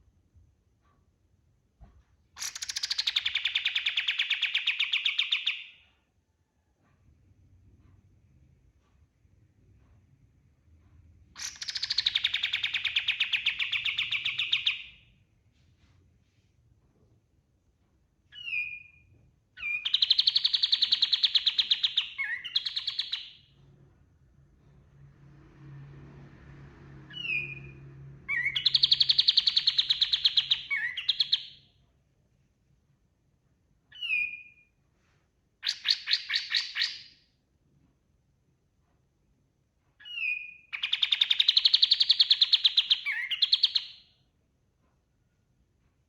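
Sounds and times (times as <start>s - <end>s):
bird singing with rattling trills: 2.4s - 5.8s, 11.4s - 15.0s, 19.6s - 23.5s, 27.1s - 31.6s, 35.6s - 37.1s, 40.0s - 44.0s.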